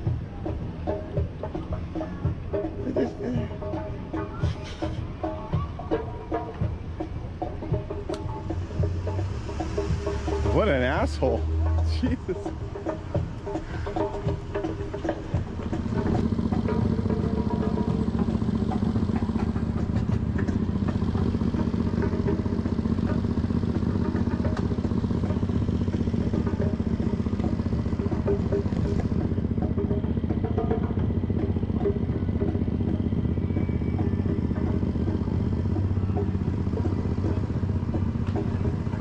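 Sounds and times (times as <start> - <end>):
bicycle rattles and clicks: 12.8 - 39.0.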